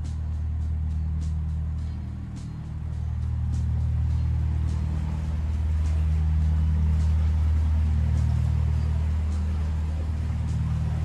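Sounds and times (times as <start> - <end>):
boat diesel engine droning: 0.0 - 11.0.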